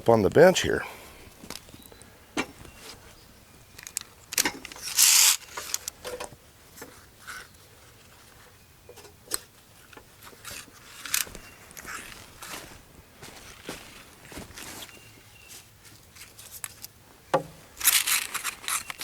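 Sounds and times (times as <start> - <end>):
wooden slabs knocking: 17.3 - 17.6.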